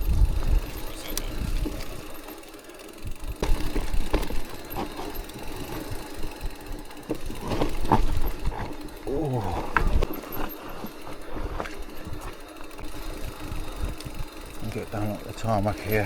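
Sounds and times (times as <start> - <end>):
constant low rumble: 0.0 - 2.2
bike knocking and rattling over roots: 0.0 - 16.0.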